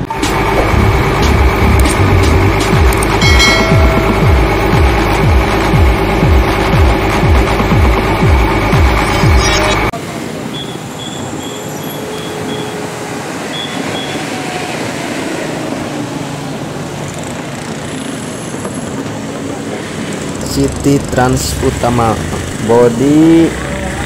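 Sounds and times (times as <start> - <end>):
intro music: 0.0 - 9.9
buses running: 0.0 - 24.0
short high beeps: 3.1 - 5.3, 9.0 - 9.9, 10.5 - 12.8, 13.5 - 14.2.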